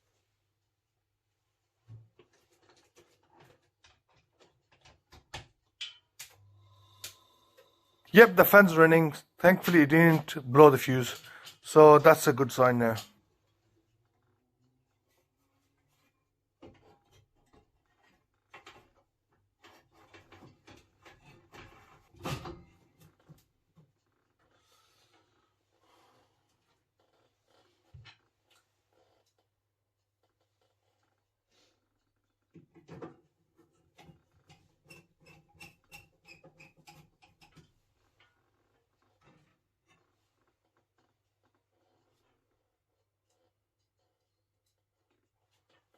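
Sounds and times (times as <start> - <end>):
knocks and clatter of handling: 1.8 - 6.4, 15.8 - 24.0, 32.4 - 40.5.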